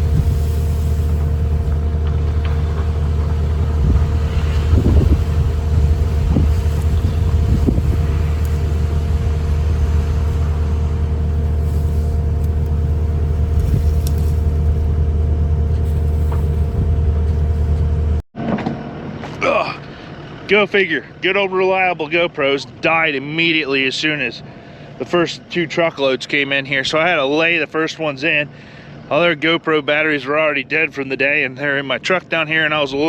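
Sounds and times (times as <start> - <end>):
loader engine humming: 0.0 - 18.2.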